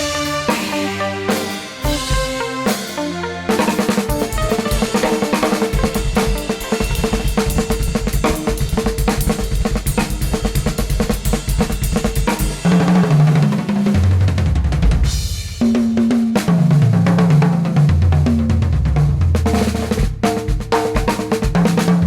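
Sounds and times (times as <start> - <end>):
held note: 0.0 - 7.8
moving bass line: 0.0 - 8.0
drum kit playing a busy beat: 0.0 - 22.0.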